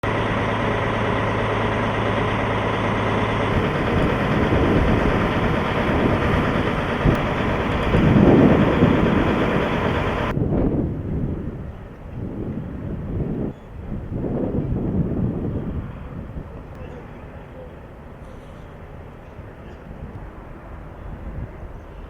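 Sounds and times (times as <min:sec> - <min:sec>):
truck diesel engines idling: 0:00.0 - 0:10.4.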